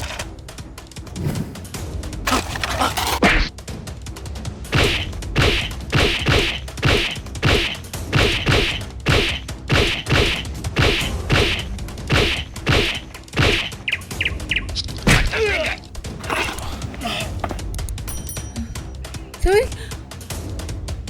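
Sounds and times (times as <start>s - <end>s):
rhythmic thuds with sharp smack: 3.5s - 15.2s.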